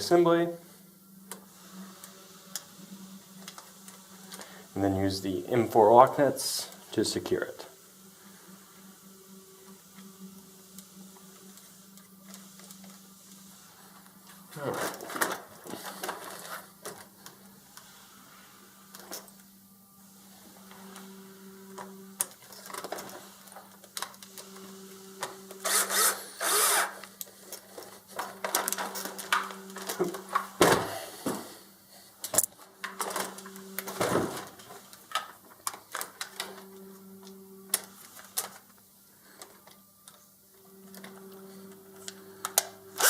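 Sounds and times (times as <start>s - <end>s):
small power tool running: 24.4s - 27.1s.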